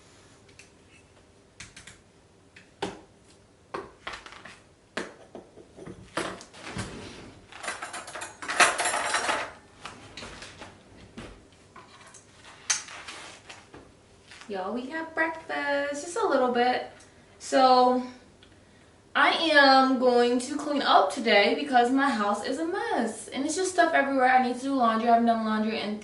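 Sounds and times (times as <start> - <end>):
household objects clattering: 5.0 - 13.4
rustling and scraping: 5.8 - 8.2, 8.8 - 14.6.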